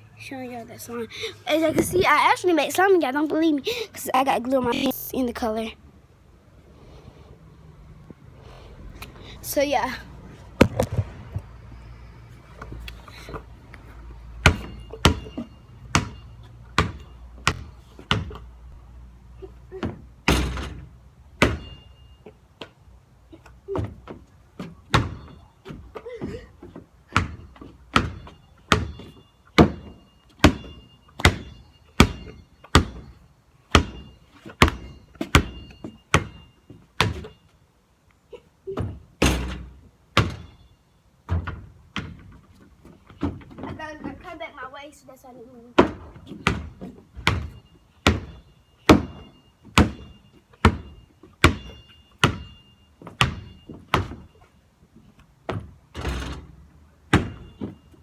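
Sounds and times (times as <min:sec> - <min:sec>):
basketball bouncing on hard ground: 0:10.6 - 0:11.5, 0:14.4 - 0:18.5, 0:19.8 - 0:22.8, 0:23.7 - 0:37.4, 0:38.7 - 0:40.7, 0:41.3 - 0:44.3, 0:45.8 - 0:54.3, 0:55.4 - 0:56.3, 0:57.1 - 0:57.9.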